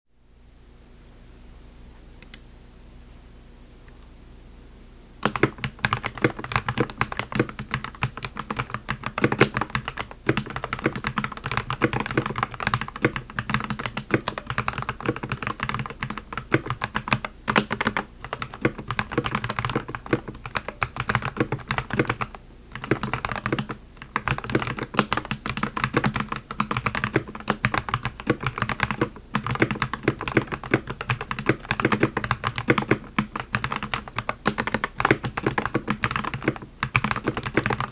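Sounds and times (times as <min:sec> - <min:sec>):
faint background hum: 0:00.1 - 0:37.9
mechanical keyboard typing: 0:05.2 - 0:37.9.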